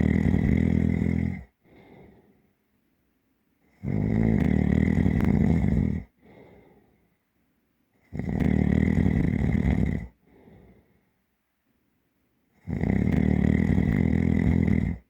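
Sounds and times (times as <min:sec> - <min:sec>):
person snoring heavily: 0:00.0 - 0:02.2, 0:03.8 - 0:06.6, 0:08.1 - 0:10.7, 0:12.6 - 0:15.0
soft breath out: 0:01.4 - 0:02.6, 0:06.0 - 0:07.2, 0:10.0 - 0:11.2.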